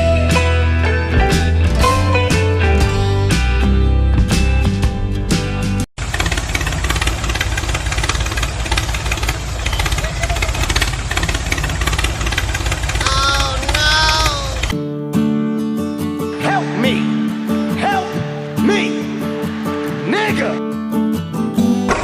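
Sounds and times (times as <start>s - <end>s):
motor rattling chatter: 6.0s - 14.8s
person calling out: 13.0s - 14.8s.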